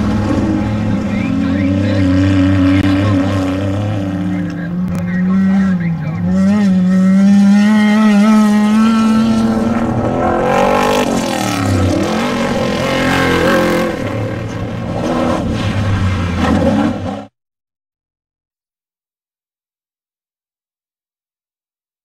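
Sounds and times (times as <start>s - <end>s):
race vehicle engines running hard: 0.0s - 17.3s.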